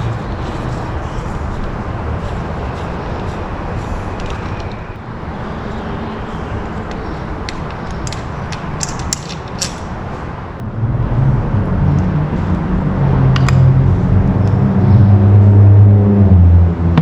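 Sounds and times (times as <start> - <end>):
low motor drone: 0.0 - 17.0
steady rumble: 0.0 - 17.0.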